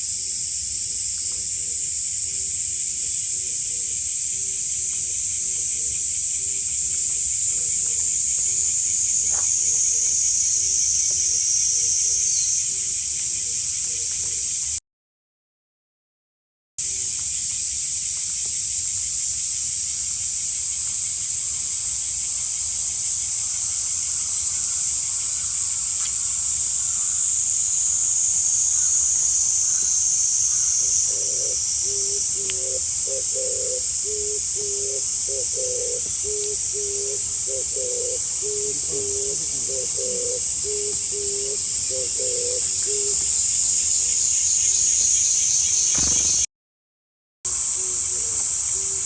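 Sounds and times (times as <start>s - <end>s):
high-pitched hiss: 0.0s - 14.8s, 16.8s - 46.5s, 47.5s - 49.0s
low rhythmic call: 23.4s - 43.4s.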